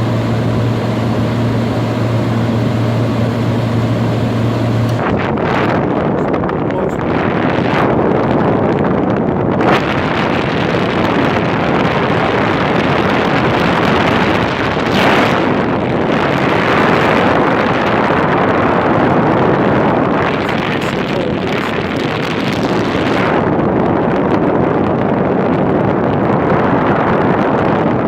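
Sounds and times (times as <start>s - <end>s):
window air conditioner running: 0.0s - 8.4s.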